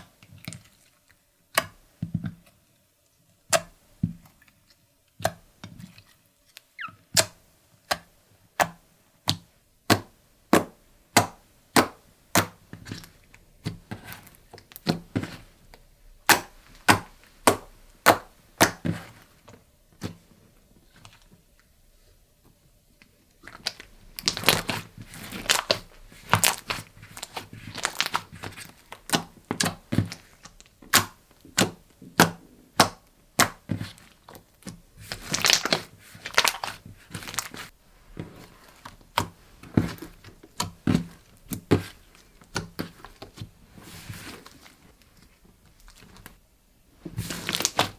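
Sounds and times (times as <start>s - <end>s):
slime crackling and squishing: 23.4s - 46.4s, 47.1s - 47.9s
slime wet pops: 29.0s - 33.7s.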